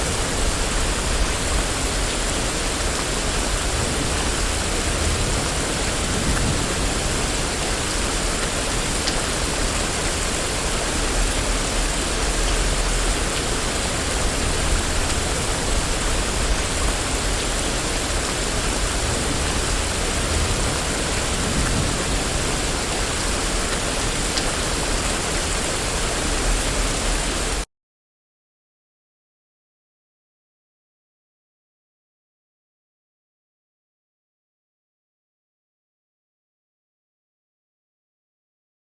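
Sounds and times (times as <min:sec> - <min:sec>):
rain on a street: 0:00.0 - 0:27.7.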